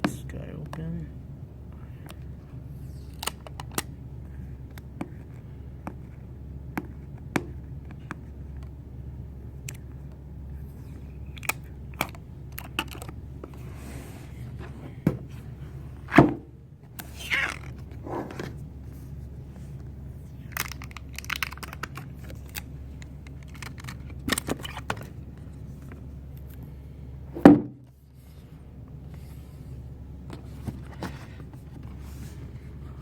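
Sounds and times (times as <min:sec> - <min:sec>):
steady low hum: 0:00.0 - 0:33.0
packaging rustling: 0:20.4 - 0:25.2.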